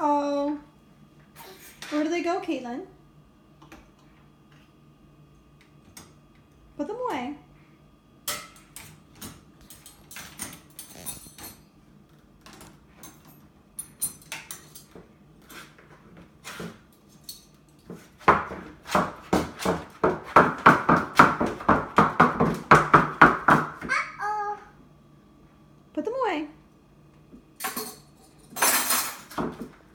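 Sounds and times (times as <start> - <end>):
dishes and cutlery clinking: 8.3 - 11.7, 12.6 - 15.8, 27.6 - 29.7
evenly paced knocks: 18.2 - 23.9.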